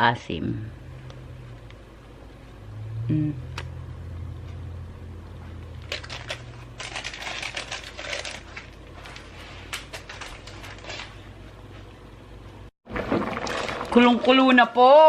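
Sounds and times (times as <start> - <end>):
low hum: 0.0 - 13.9
plastic bag crackling: 5.7 - 11.4, 12.9 - 14.7.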